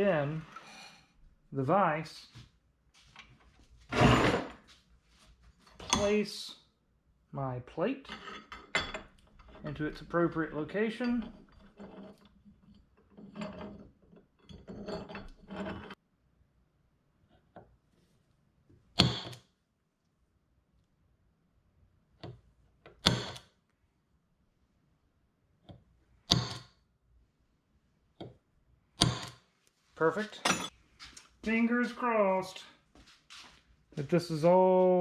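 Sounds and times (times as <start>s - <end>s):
shuffling: 29.8s - 35.0s.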